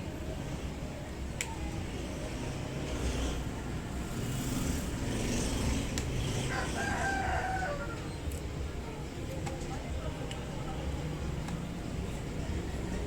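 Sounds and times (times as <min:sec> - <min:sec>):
rooster crowing: 0:06.5 - 0:08.1.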